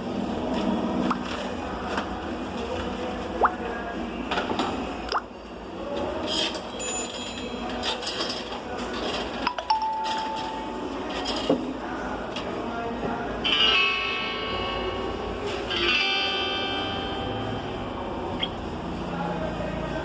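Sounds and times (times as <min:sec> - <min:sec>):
ringtone chiming and tinkling: 0:06.7 - 0:07.6.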